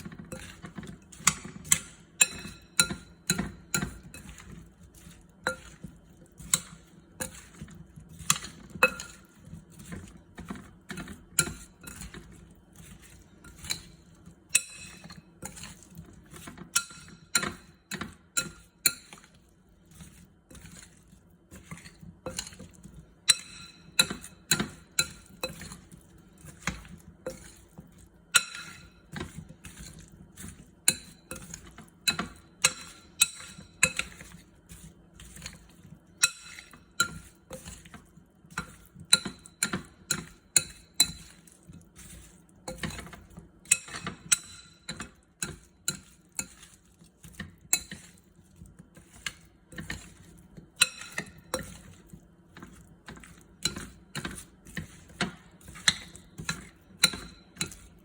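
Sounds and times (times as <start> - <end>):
utensil clinking against bowl: 0.0 - 19.3, 21.5 - 48.2, 49.0 - 58.0.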